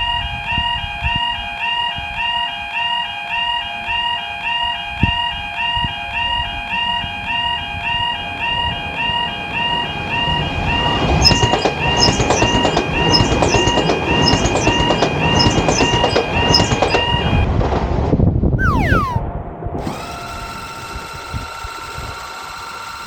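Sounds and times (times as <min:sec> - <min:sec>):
passing train rumble: 0:09.5 - 0:17.7
level-crossing warning bell ringing: 0:11.2 - 0:17.1
falling whistle-like tone: 0:18.6 - 0:19.3
steady held tone: 0:18.6 - 0:19.3.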